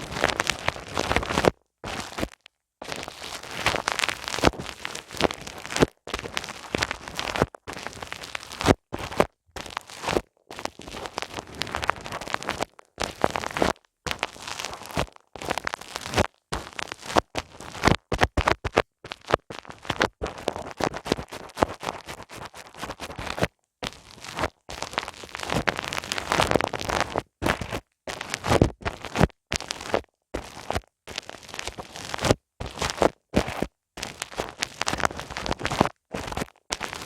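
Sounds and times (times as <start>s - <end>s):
hands rubbing on microphone: 19.3s - 25.6s.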